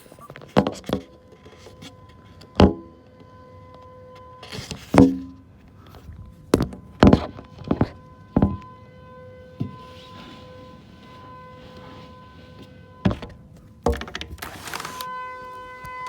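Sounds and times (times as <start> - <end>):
sharp knocks and thumps: 4.8 - 5.4, 6.5 - 8.7, 13.0 - 14.6.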